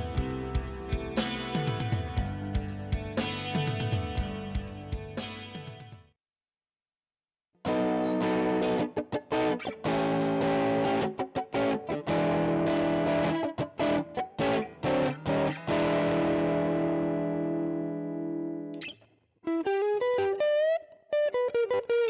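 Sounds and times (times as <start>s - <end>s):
distorted electric guitar chords: 0.0s - 5.9s, 7.6s - 18.9s.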